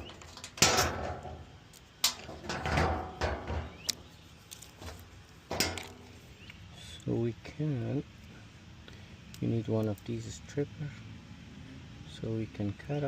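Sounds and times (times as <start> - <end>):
rustle: 0.0 - 13.0.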